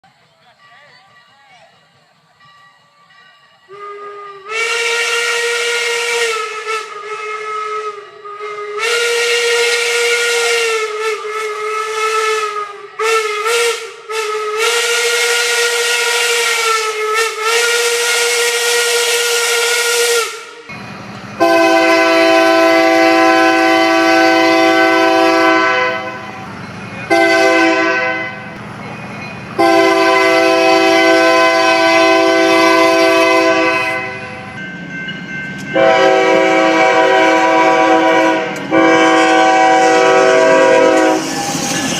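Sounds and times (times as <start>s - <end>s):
locomotive air horn: 3.7s - 20.6s, 21.4s - 26.4s, 27.1s - 28.6s, 29.6s - 34.5s, 35.7s - 41.5s
steam whistle blasts: 3.7s - 20.7s, 21.4s - 26.5s, 27.1s - 28.5s, 29.6s - 34.5s, 35.7s - 41.8s
steam hiss: 37.6s - 41.9s.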